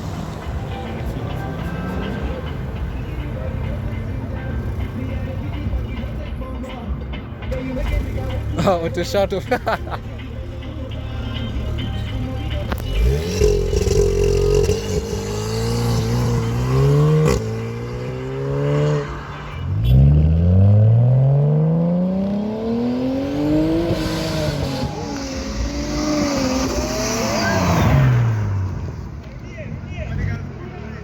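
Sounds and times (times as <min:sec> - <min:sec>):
car engine accelerating hard: 0:12.6 - 0:28.9.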